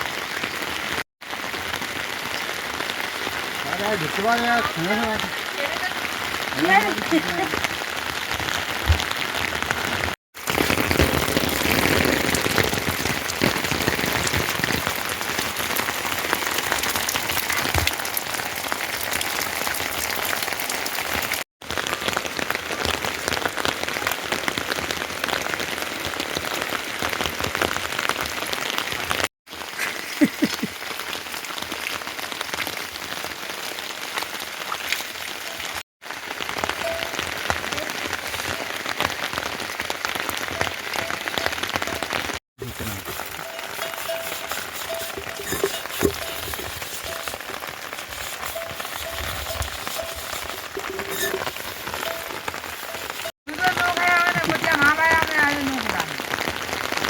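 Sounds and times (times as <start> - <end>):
heavy rain pattering: 0.0 - 57.0.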